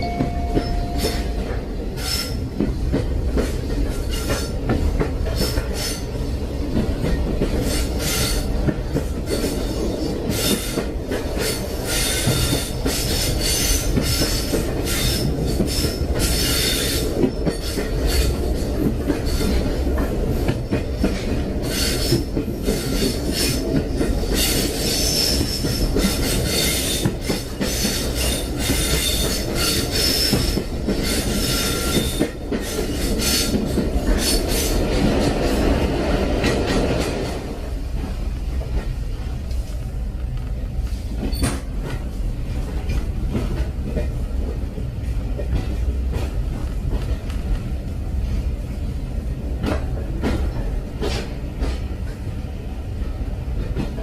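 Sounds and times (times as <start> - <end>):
wheels squealing on rails: 0.0 - 6.4, 7.0 - 37.4, 41.0 - 41.7
train low rumble: 0.0 - 54.0.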